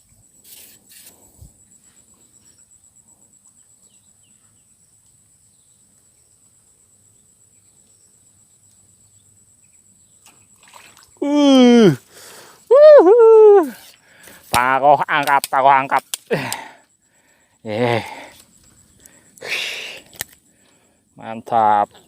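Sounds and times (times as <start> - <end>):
high-pitched insect drone: 9.1 - 21.9.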